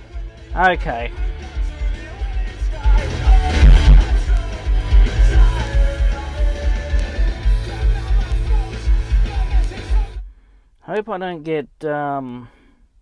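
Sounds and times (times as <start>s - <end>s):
music with bass beat: 0.0s - 10.3s.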